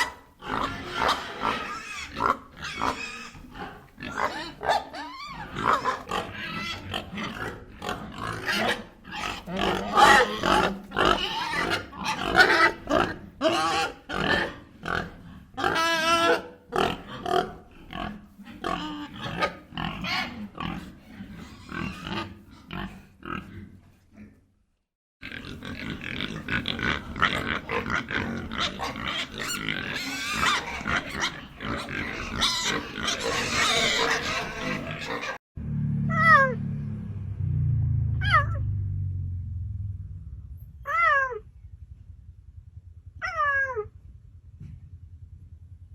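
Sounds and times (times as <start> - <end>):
pig squealing: 0.0 - 23.6, 25.2 - 35.4, 38.2 - 38.6, 40.9 - 41.4, 43.2 - 43.9
pigs calling: 0.0 - 24.4, 25.2 - 35.4.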